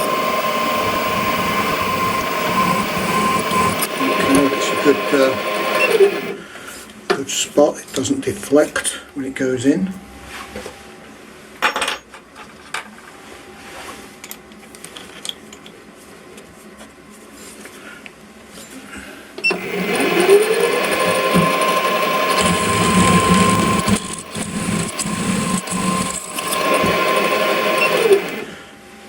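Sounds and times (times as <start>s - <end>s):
drill bit cutting steel: 0.0s - 6.4s, 19.5s - 28.5s
milling machine motor whine: 0.0s - 6.4s, 19.4s - 28.8s.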